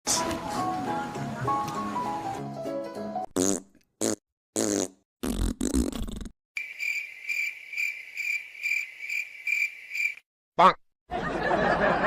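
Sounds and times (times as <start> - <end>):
wet fart noises: 3.3 - 6.4
cricket chirping: 6.6 - 10.2.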